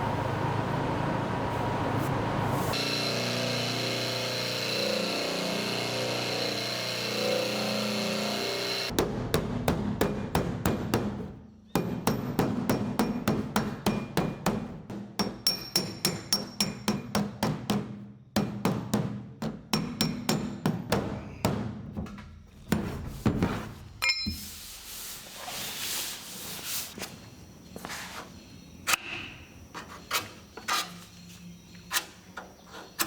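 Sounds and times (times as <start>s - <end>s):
hammer striking metal: 15.2s - 17.8s, 19.7s - 21.5s, 24.0s - 24.4s.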